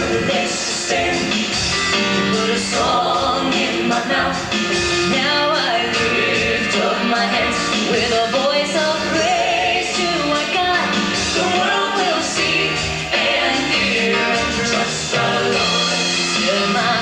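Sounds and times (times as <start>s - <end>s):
gospel group singing: 0.0s - 17.0s
instrumental backing: 0.0s - 17.0s.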